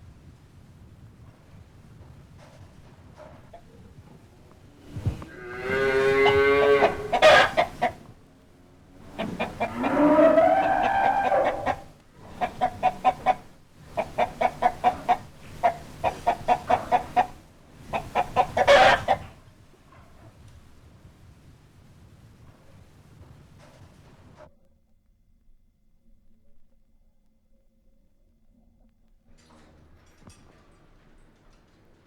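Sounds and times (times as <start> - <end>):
chickens clucking: 4.8 - 8.2, 8.9 - 19.4
chicken calls: 4.9 - 8.2, 8.9 - 19.4
chicken squawk: 5.1 - 8.1, 9.0 - 19.4.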